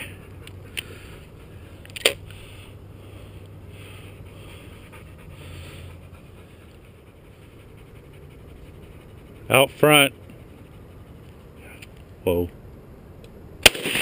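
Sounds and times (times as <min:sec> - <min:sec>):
dog panting: 0:03.8 - 0:11.8.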